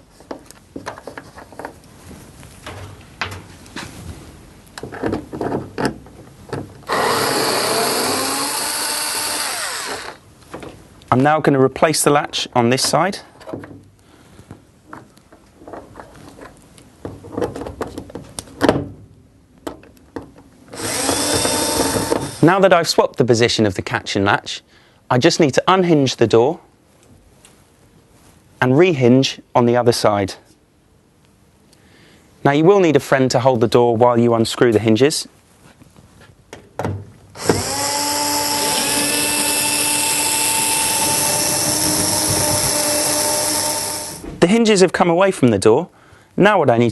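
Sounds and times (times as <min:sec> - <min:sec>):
electric screwdriver motor whining: 0:06.9 - 0:10.2, 0:20.8 - 0:22.4, 0:37.4 - 0:44.2.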